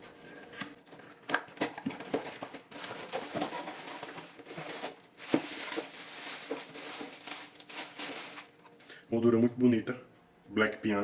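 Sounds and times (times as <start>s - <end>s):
packaging rustling and crinkling: 1.6s - 8.8s.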